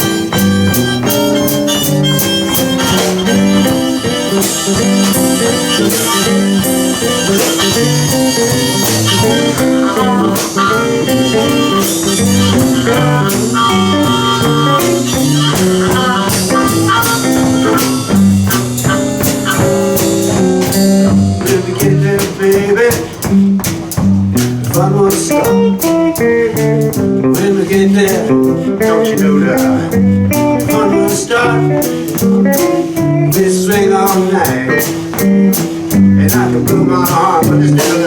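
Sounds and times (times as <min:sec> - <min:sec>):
harmonica: 0:00.0 - 0:22.4
drum hits: 0:00.0 - 0:28.6
live blues band playing: 0:00.0 - 0:38.0.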